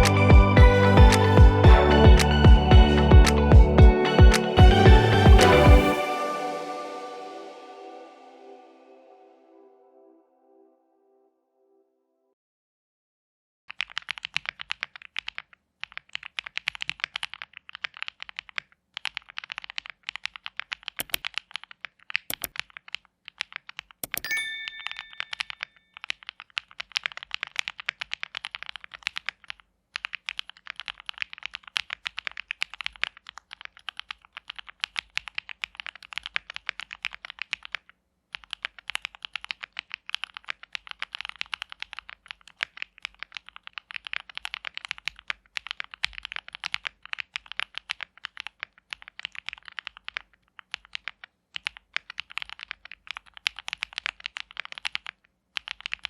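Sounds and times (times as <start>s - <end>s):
mechanical keyboard typing: 13.7s - 56.0s.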